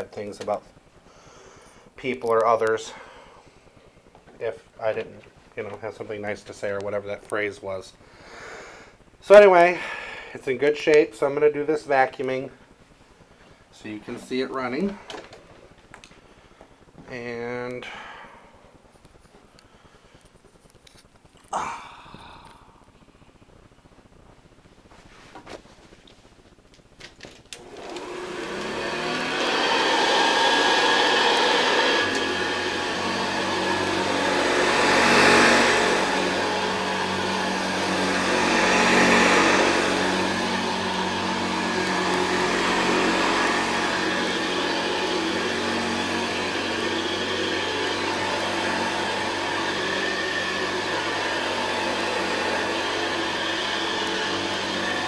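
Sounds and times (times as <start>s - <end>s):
vacuum cleaner motor running: 27.5s - 55.0s.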